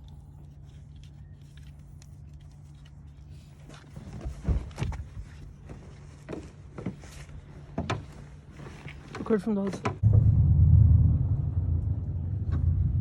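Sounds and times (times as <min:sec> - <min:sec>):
steady low hum: 0:10.0 - 0:13.0.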